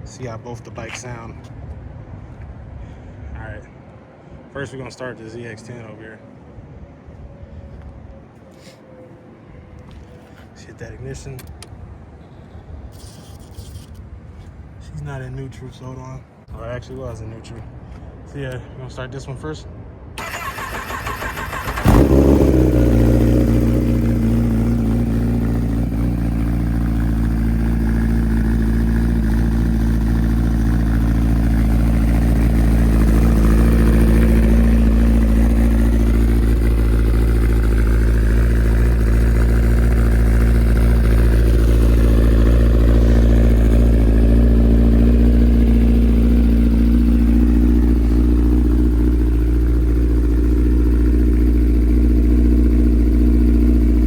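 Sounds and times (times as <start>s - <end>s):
motorcycle engine starting and idling: 20.2s - 54.0s.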